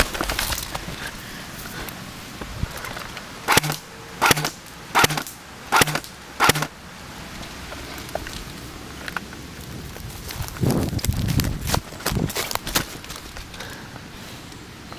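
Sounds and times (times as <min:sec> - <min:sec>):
airsoft rifle shots: 0:03.5 - 0:06.8.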